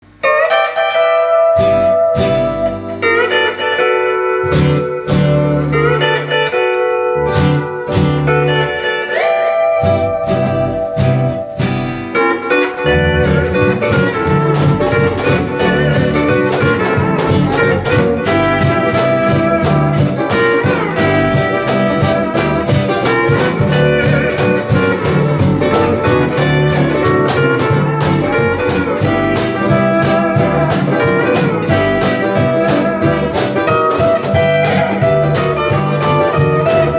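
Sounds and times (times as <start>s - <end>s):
strummed ukulele and guitar: 0.0s - 36.9s
steel guitar sliding melody: 0.1s - 36.9s
bass: 1.5s - 36.9s
light percussion: 10.0s - 36.9s.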